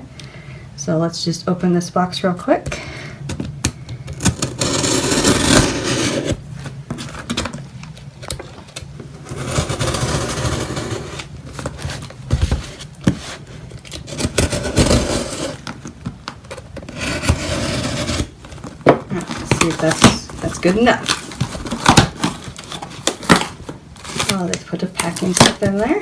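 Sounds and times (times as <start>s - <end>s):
cardboard box scraping and rustling: 4.4s - 7.4s, 9.1s - 15.7s, 16.8s - 24.5s.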